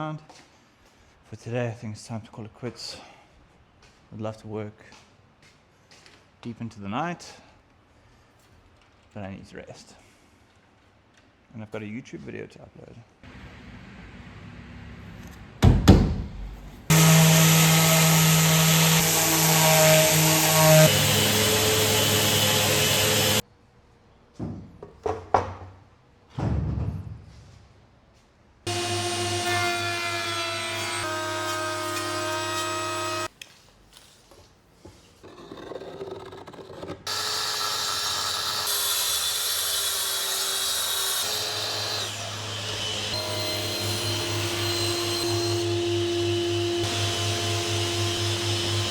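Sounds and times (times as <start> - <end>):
woodworking power tool whine: 16.9 - 23.4, 28.7 - 33.3, 37.1 - 48.9
knocks and handling noises: 24.3 - 25.8.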